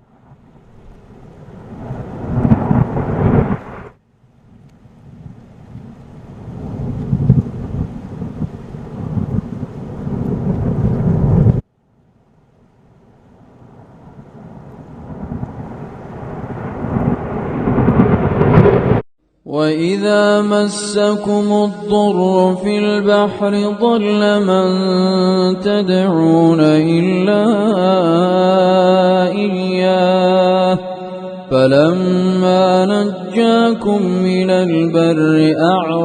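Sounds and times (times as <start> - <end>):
thunder rolling: 0.0 - 11.6, 13.2 - 19.0
rain hiss: 0.6 - 11.4.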